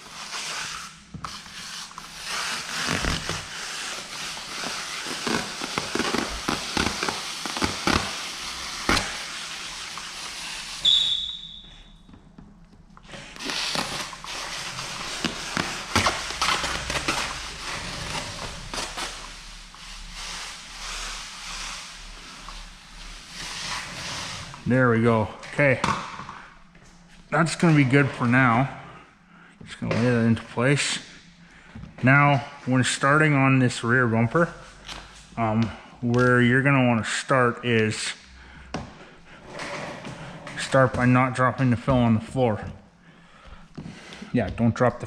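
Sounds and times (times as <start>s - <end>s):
plastic film crackling and crinkling: 1.8s - 10.8s, 13.2s - 23.8s.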